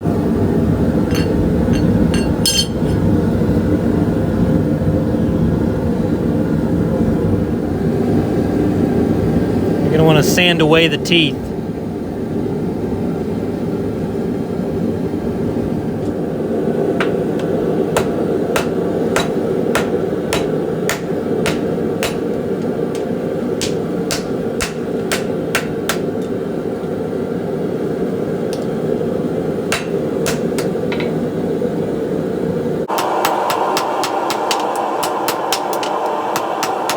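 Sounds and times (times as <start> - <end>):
hammer striking steel anvil: 1.1 - 3.1, 17.0 - 26.4, 29.7 - 31.2, 32.9 - 36.9.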